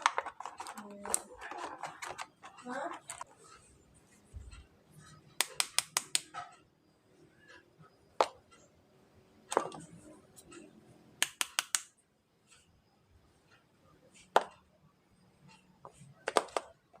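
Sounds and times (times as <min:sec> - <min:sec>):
toy packaging clicks and taps: 0:00.0 - 0:03.3, 0:05.4 - 0:06.5, 0:11.2 - 0:11.9, 0:16.2 - 0:17.0.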